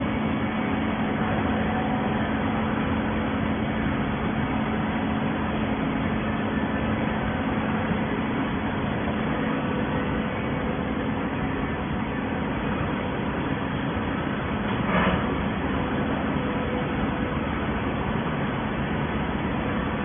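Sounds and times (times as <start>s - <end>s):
baling machine humming: 0.0s - 20.0s.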